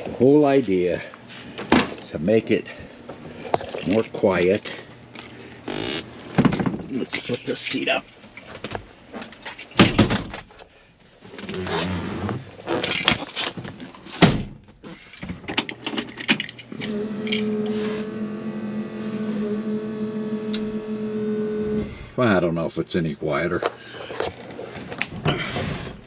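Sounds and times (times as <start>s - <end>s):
electric fuel pump humming: 16.6s - 22.2s.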